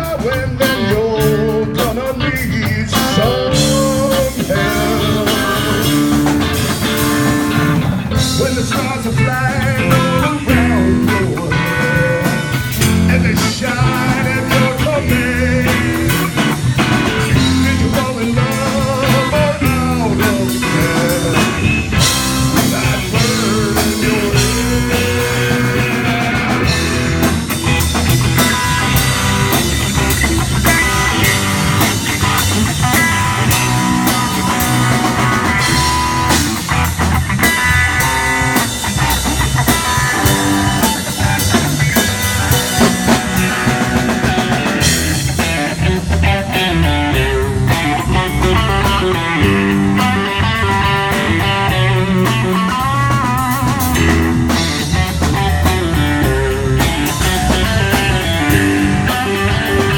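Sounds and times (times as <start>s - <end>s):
drum kit: 0.0s - 59.9s
guitar melody: 0.0s - 59.9s.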